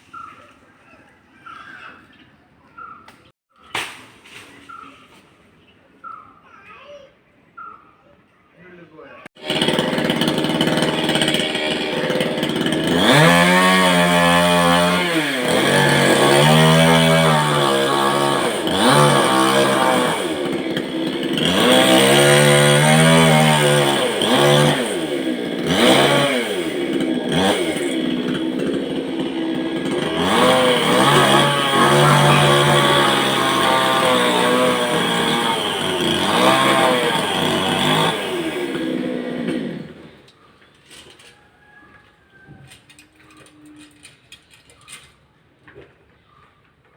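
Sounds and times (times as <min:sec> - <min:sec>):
chainsaw cutting wood: 0:09.4 - 0:41.3.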